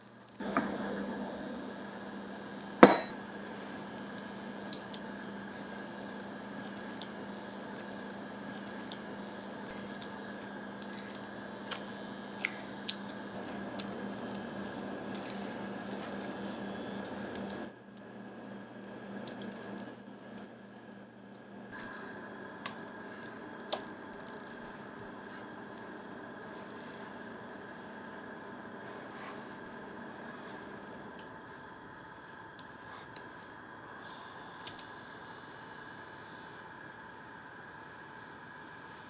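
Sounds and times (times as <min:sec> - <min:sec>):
steady low hum: 0:00.0 - 0:39.0
sharp clink: 0:02.8 - 0:03.2
wet squishing of stirred puree: 0:06.6 - 0:16.5.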